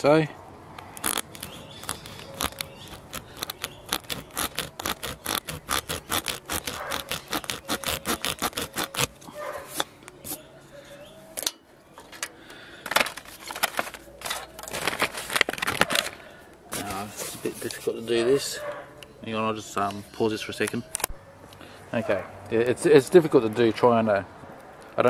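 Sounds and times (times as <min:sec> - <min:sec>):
rasp tool scraping in tyre: 0:01.0 - 0:09.9.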